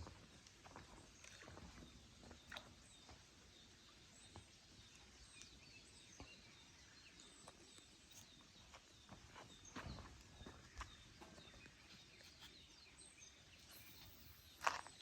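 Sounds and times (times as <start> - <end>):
faint high chirps: 13.5 - 15.0.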